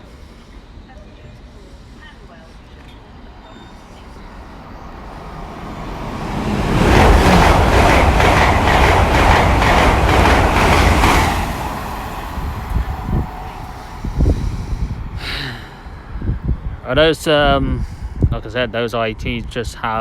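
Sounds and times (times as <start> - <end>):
train passing at high speed: 0.0 - 18.3
wheels clattering: 3.6 - 13.8.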